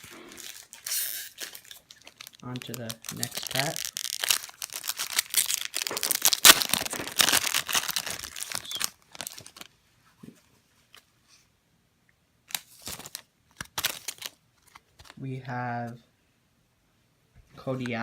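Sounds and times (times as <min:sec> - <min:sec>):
foil wrapper tearing and crinkling: 0:00.0 - 0:09.7, 0:12.5 - 0:15.2
cards rustling and tapping: 0:12.5 - 0:15.2.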